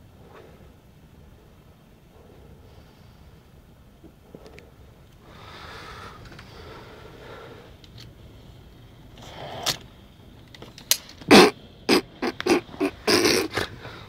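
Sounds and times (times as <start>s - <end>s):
man snoring and snorting: 11.3s - 13.7s.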